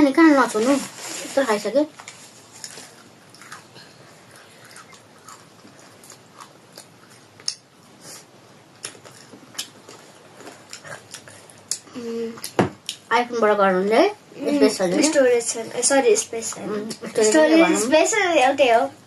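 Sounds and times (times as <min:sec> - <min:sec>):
person chewing food: 0:02.6 - 0:13.0.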